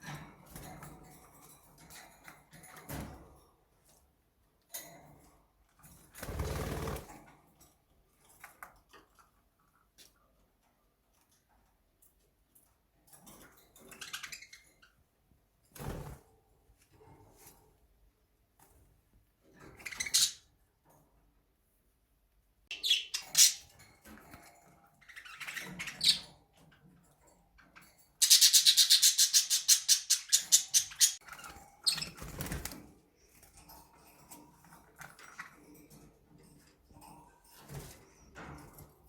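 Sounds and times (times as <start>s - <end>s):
budgerigars chirping: 28.2s - 31.2s.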